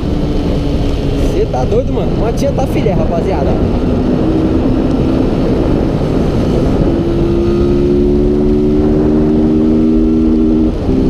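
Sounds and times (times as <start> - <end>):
wind rush on microphone: 0.0 - 11.0
motorcycle engine running: 3.6 - 11.0.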